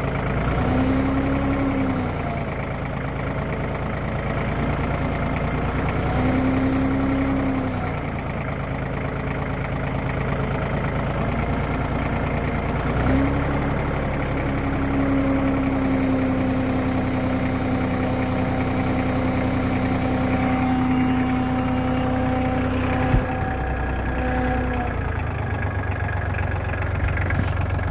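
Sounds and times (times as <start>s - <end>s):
tractor diesel engine idling: 0.0s - 27.9s
steady droning hydraulic pump tone: 17.9s - 27.9s.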